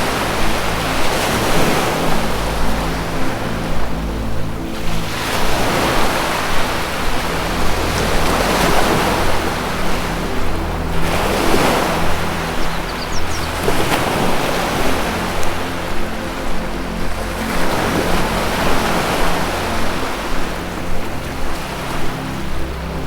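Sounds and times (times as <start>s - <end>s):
low music drone: 0.0s - 23.0s
ocean surf washing in: 0.0s - 23.0s
high bird chirps: 12.6s - 13.6s.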